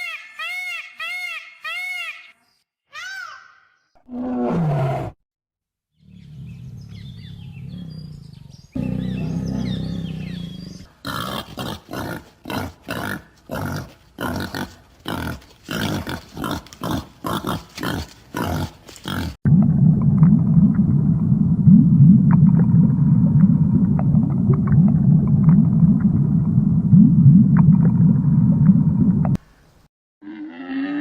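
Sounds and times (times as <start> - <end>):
low rumbling animal call: 6.0 - 10.9.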